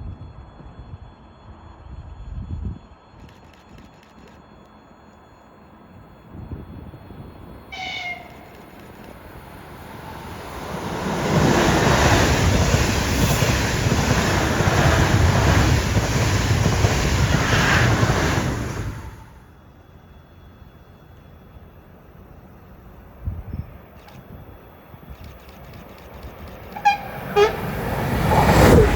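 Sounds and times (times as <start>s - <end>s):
train passing at speed: 4.4s - 28.9s
train horn: 7.7s - 8.6s, 26.7s - 27.9s.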